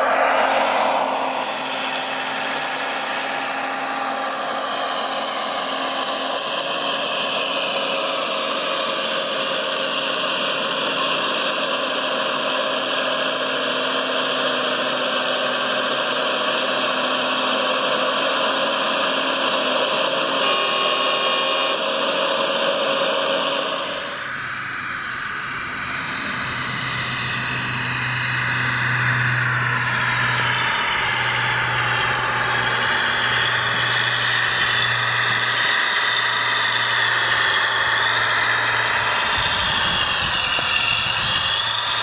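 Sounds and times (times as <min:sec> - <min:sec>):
electric motors whining: 0:16.7 - 0:42.0.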